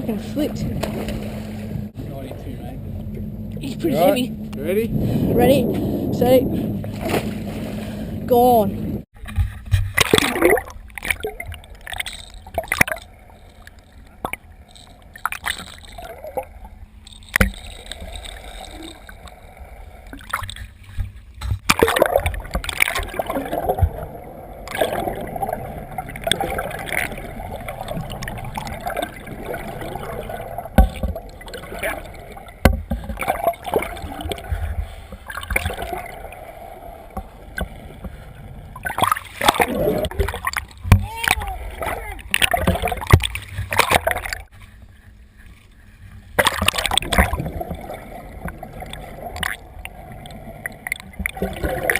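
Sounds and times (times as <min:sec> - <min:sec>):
low rumble: 0:00.0 - 0:09.6, 0:10.6 - 0:39.0
water sloshing around boat: 0:00.0 - 0:51.9.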